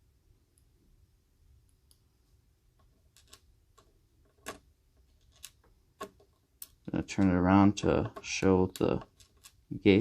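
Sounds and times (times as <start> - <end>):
small metal lock parts clicking: 3.1 - 7.3, 8.2 - 9.6.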